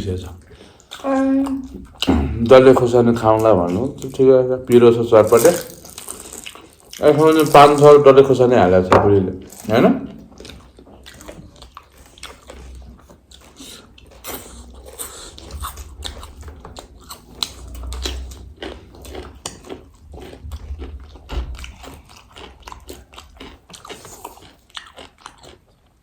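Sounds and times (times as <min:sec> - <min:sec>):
crunchy food chewing: 0:04.8 - 0:08.3, 0:09.4 - 0:26.0.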